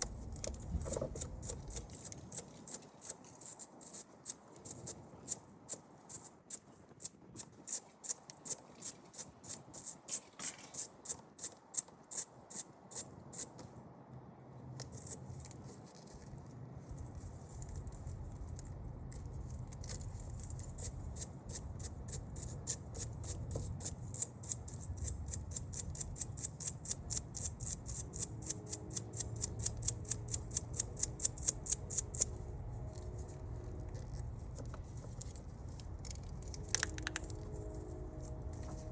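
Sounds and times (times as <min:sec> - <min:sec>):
low hum: 0:28.6 - 0:38.9.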